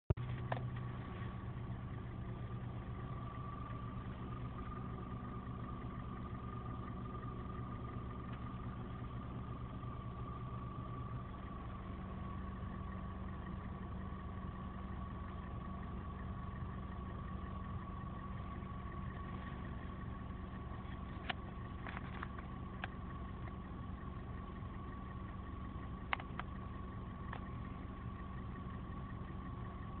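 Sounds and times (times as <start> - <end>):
car engine running: 0.0 - 30.0
faint clicks: 26.0 - 27.7.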